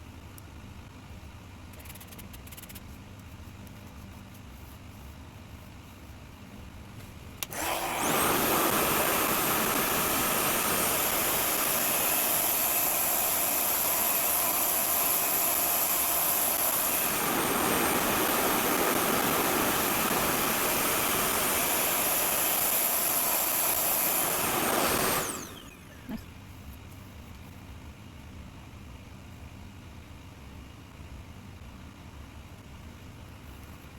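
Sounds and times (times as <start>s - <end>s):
hair dryer suction motor whine: 7.4s - 26.2s.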